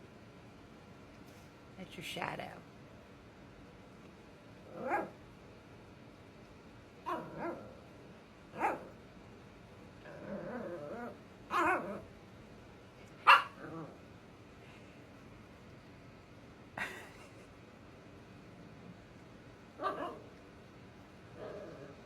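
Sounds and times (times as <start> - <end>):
puppy growling: 4.6 - 5.2, 7.0 - 9.0, 10.0 - 12.2, 13.3 - 14.1, 19.8 - 20.4, 21.2 - 22.0
puppy barking: 4.7 - 5.2, 7.1 - 7.7, 8.6 - 9.0, 11.5 - 12.0, 13.2 - 13.7, 19.8 - 20.3.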